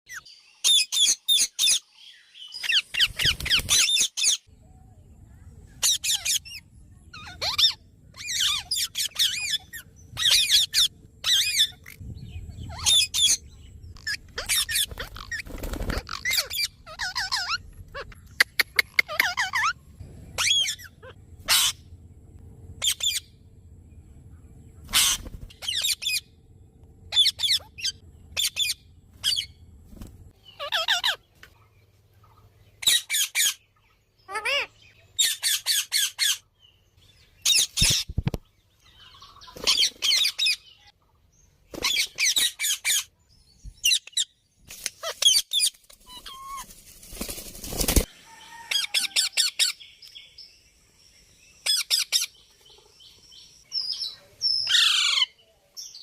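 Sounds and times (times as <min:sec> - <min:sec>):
faint low hum: 0:04.5 - 0:32.9
parrots chirping: 0:05.8 - 0:21.9, 0:22.8 - 0:23.4, 0:24.8 - 0:26.4, 0:27.1 - 0:29.7, 0:30.4 - 0:31.3, 0:32.8 - 0:36.4, 0:45.0 - 0:46.6, 0:48.3 - 0:50.0, 0:51.6 - 0:55.3.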